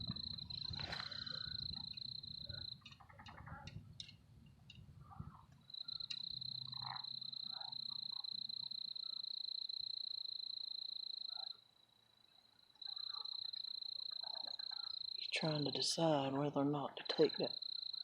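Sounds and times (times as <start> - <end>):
faint scattered sounds: 0.0 - 18.0.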